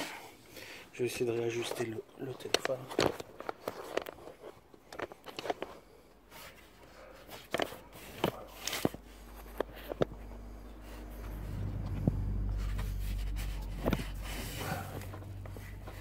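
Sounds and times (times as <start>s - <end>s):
hands handling parts clicking: 1.4s - 10.4s
low rumble: 10.1s - 16.0s.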